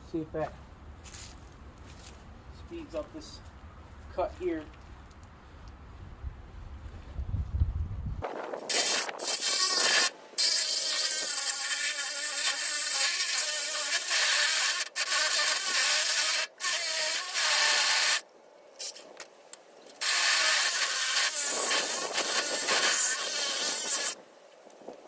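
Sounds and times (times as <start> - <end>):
power saw cutting metal: 8.7 - 18.2, 20.0 - 24.2.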